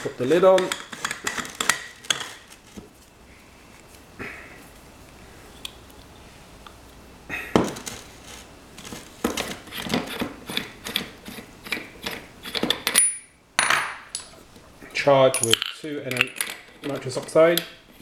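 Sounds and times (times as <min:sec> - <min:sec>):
metal clicks and clinks: 0:15.3 - 0:17.7.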